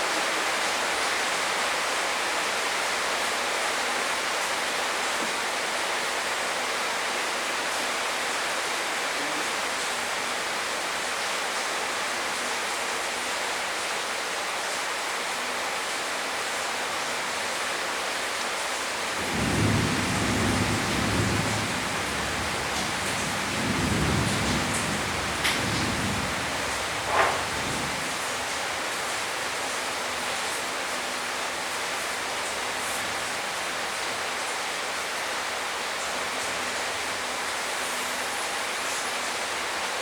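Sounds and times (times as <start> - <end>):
heavy rain: 0.0 - 40.0
thunder rumbling: 19.2 - 28.6.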